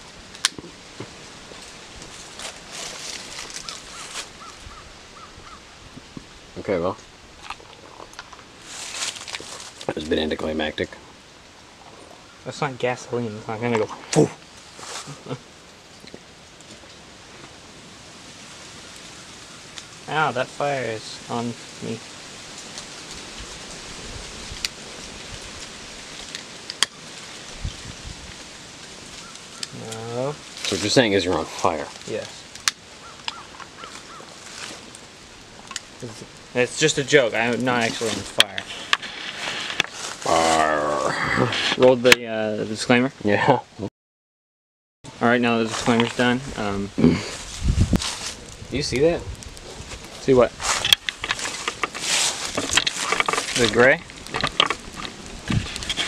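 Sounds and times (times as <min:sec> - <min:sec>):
fire hissing and crackling: 0:00.0 - 0:43.6, 0:45.1 - 0:56.0
dull low bump: 0:46.4 - 0:50.8.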